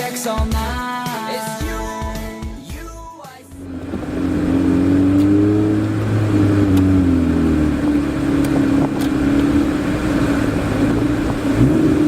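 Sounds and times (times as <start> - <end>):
car engine and road noise: 3.5 - 12.0
low hum: 3.5 - 12.0.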